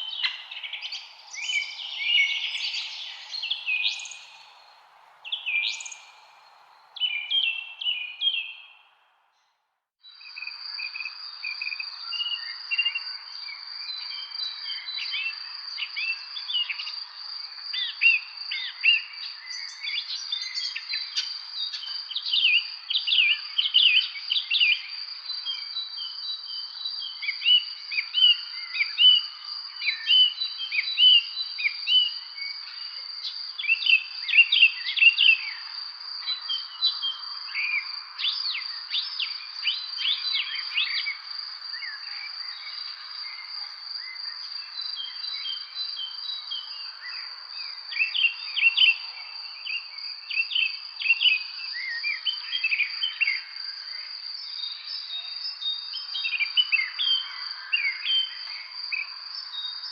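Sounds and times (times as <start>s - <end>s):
birds chirping: 0.0s - 9.0s.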